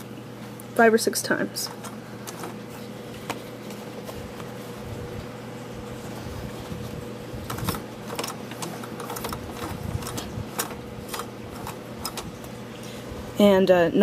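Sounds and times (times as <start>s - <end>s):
sewing machine hum: 5.8s - 13.3s.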